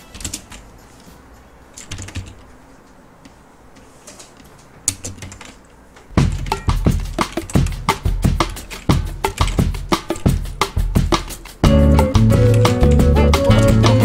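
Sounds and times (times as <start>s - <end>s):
drum beat: 6.1s - 14.0s.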